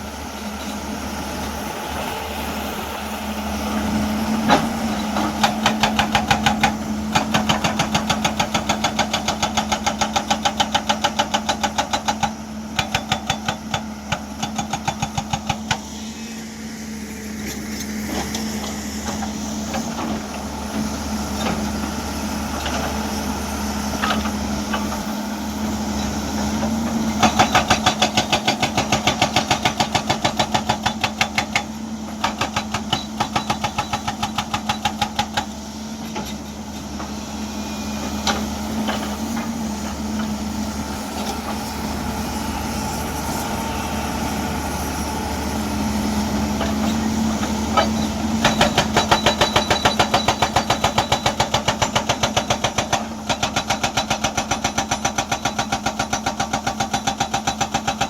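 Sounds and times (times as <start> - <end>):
hydraulic hammer pounding rock: 3.8 - 16.0, 26.0 - 42.2, 46.2 - 58.0
diesel engine droning: 15.0 - 29.0, 35.3 - 53.2.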